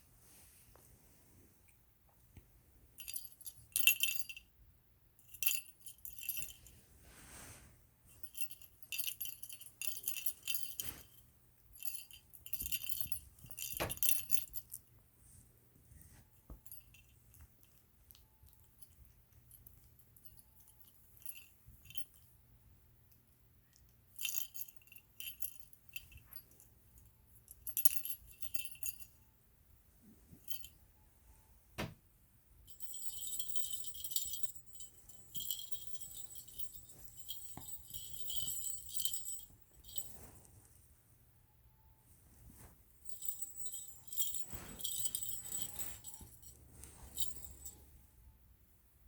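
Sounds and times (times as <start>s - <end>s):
small metal jingling: 3.0s - 4.5s, 5.2s - 6.8s, 8.1s - 15.0s, 16.6s - 22.4s, 23.7s - 29.2s, 32.7s - 40.4s, 42.5s - 48.0s.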